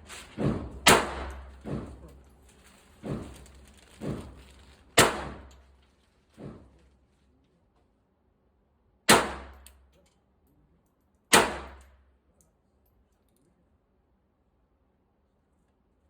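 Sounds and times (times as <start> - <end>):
pistol shots with echo: 0.8 - 1.5, 5.0 - 5.5, 9.1 - 9.6, 11.3 - 11.9.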